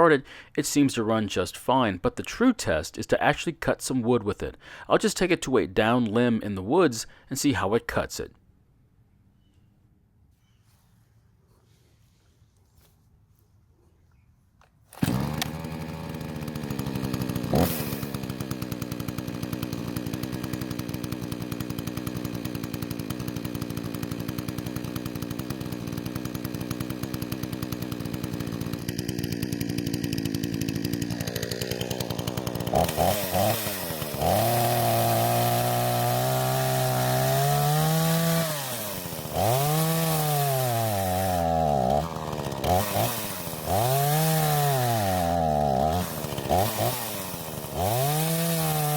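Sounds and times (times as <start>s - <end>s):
chainsaw idling and revving: 14.9s - 48.9s.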